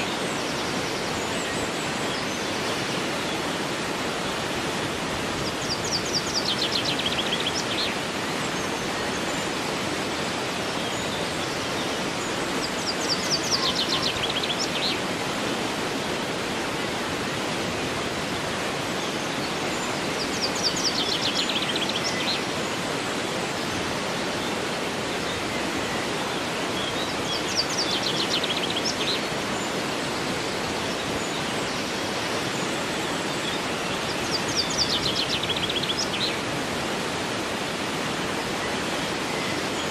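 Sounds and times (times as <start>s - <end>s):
river flowing: 0.0s - 39.9s
songbird trilling: 13.1s - 14.8s.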